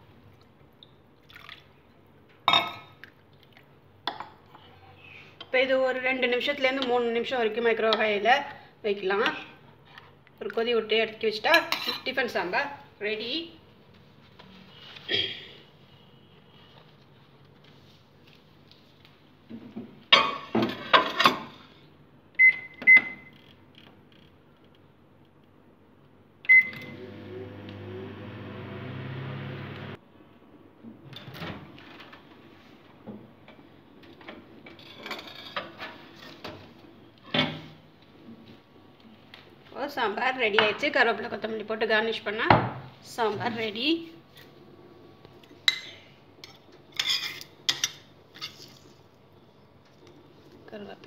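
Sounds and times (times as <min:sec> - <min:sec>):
microwave keypad beeps: 0:22.4 - 0:23.3, 0:26.5 - 0:26.9
microwave oven humming: 0:26.4 - 0:30.0.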